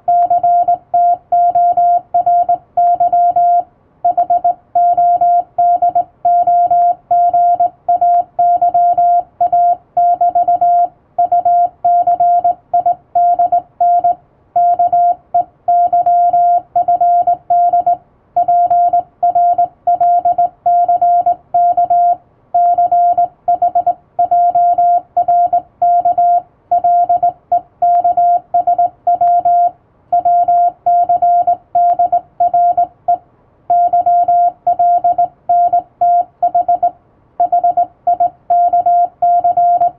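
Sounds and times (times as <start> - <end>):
morse code sidetone beeps: 0.1 - 39.9.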